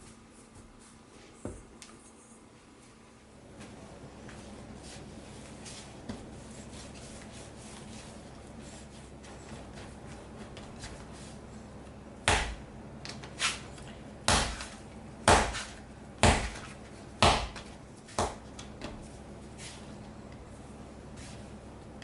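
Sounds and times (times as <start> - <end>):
dough slapped onto board: 12.3 - 12.6, 14.3 - 15.6, 16.2 - 18.5.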